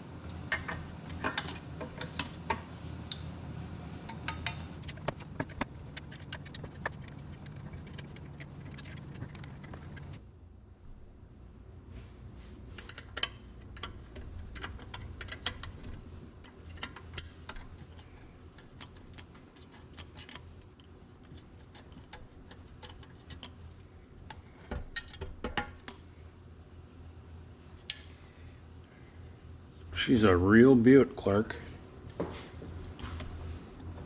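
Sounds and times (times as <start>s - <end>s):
metallic clicks of tools and parts: 12.8s - 20.9s.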